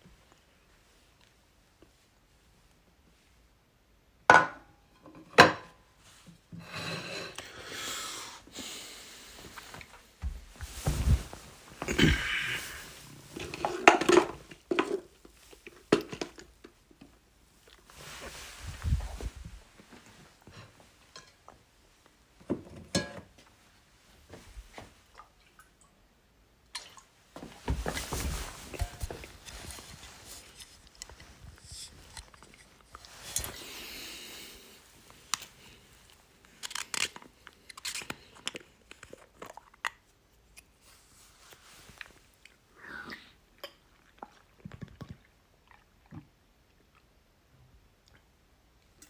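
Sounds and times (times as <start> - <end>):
crunchy chewing: 36.4 - 40.1.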